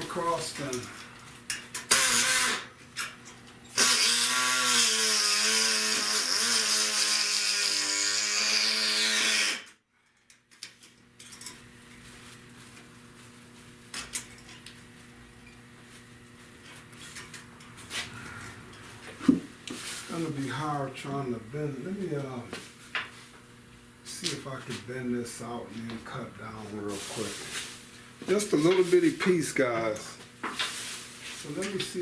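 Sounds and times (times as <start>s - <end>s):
power saw cutting sheet metal: 1.9s - 2.7s, 3.8s - 9.7s
steady hiss: 24.0s - 32.0s.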